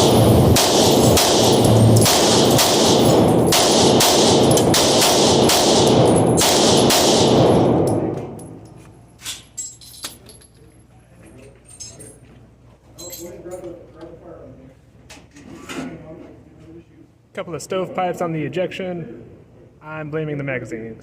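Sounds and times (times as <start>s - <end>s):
pistol shots in rapid string: 0.0s - 8.1s.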